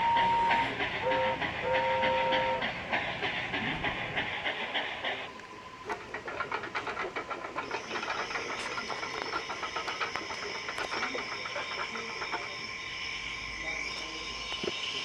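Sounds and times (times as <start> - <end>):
whistle-like tones: 0.0 - 2.7
steam hiss: 0.0 - 15.0
steam locomotive chuffing: 0.0 - 15.0.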